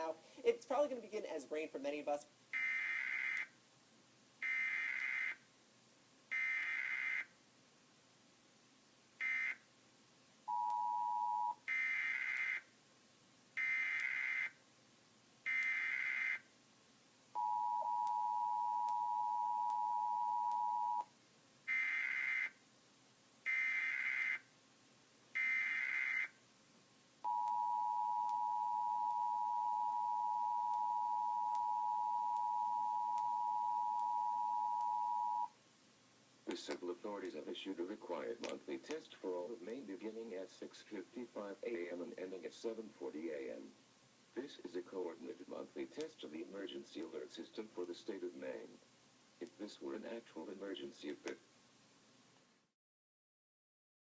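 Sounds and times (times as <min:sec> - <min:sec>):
two-tone attention signal: 0:10.5 - 0:11.6, 0:17.4 - 0:21.0, 0:27.3 - 0:35.5.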